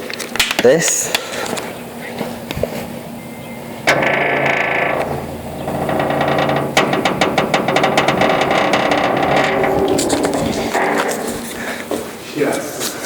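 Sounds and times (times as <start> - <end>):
fast metallic rattle: 3.8 - 11.9
metal door slamming shut: 3.9 - 11.8.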